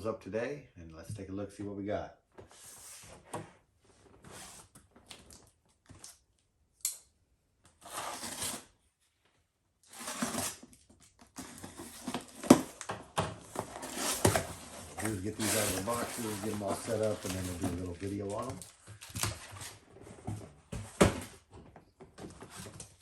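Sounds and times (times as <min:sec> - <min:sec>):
cardboard boxes rustling and scraping: 0:02.4 - 0:04.8, 0:07.8 - 0:08.7, 0:09.8 - 0:23.0.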